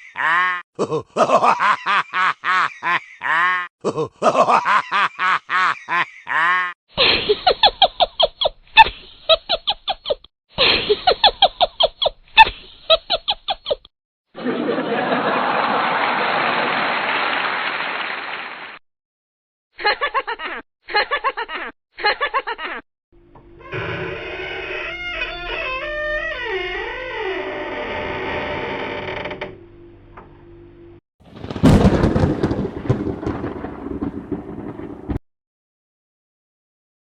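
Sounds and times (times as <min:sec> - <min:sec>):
high-pitched laugh in bursts: 0:00.0 - 0:13.8, 0:19.8 - 0:22.8
choppy pulsing laugh: 0:00.2 - 0:13.8, 0:14.4 - 0:16.2.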